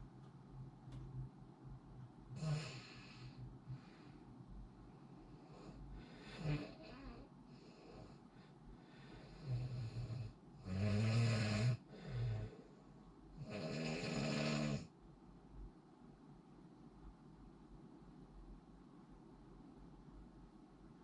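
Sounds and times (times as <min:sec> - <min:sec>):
person snoring: 0:02.4 - 0:03.9, 0:05.5 - 0:08.2, 0:09.1 - 0:12.7, 0:13.4 - 0:14.9.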